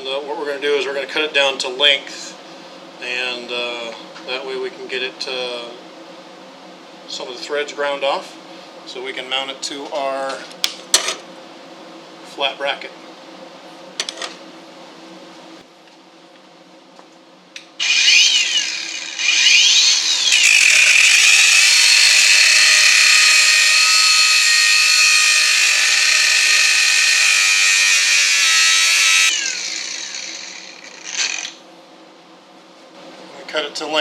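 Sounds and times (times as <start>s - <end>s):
power tool cutting steel rod: 17.8s - 31.6s.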